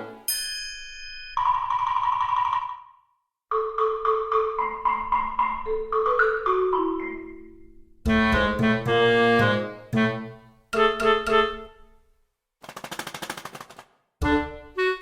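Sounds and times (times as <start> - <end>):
bouncy marimba-like melody: 3.5 - 7.8.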